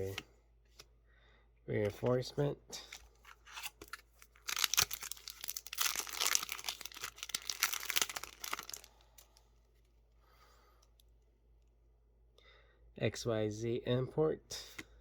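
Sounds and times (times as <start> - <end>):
foil wrapper crinkling and tearing: 3.3 - 9.3.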